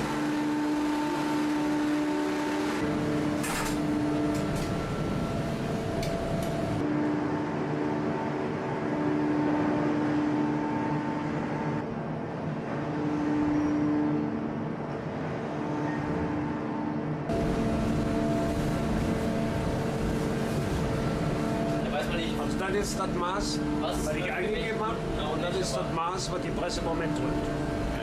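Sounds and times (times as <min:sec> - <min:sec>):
hydraulic press humming: 0:00.0 - 0:06.9.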